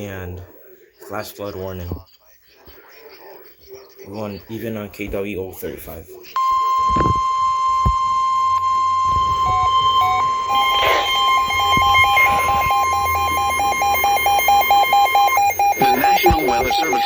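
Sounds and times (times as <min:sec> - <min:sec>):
loud steady alarm tone: 0:06.4 - 0:17.0
rapid receiver alert beeps: 0:06.4 - 0:17.0.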